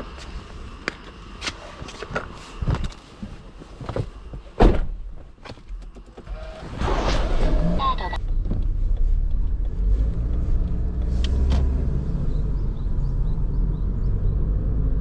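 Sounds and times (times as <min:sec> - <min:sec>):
low rumble: 0:06.2 - 0:15.0
irregular knocks and clunks: 0:08.2 - 0:10.4.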